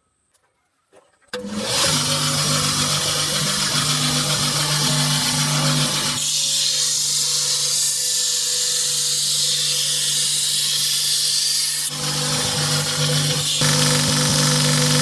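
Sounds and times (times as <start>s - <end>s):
machine motor hum: 11.9s - 15.0s.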